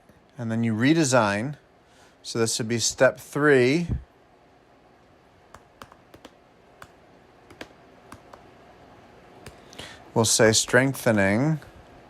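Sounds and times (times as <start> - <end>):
typing on a computer keyboard: 5.5 - 8.4.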